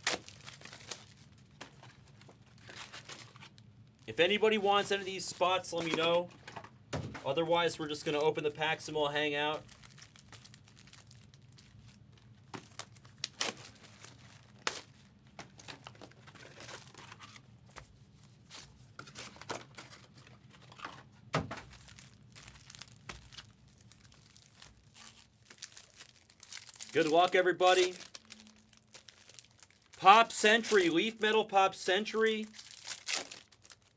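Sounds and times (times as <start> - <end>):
plastic and foil wrap tearing: 0.0 - 3.6, 9.6 - 17.5, 21.6 - 31.4, 32.0 - 33.9.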